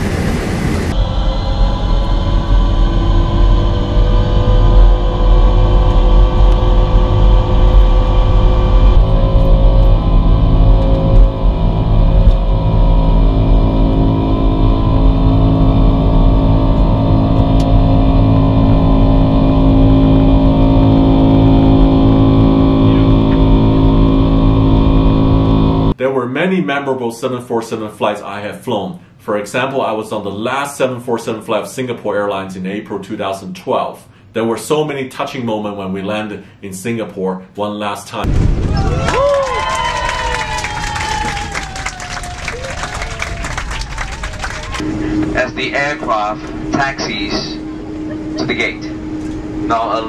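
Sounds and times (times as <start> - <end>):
jet engines rumbling and whining: 0.0 - 26.0, 38.2 - 50.0.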